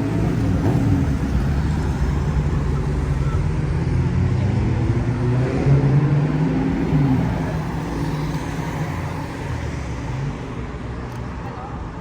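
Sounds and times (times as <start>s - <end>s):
vehicle engine droning: 0.0s - 9.2s
traffic noise: 0.0s - 12.0s.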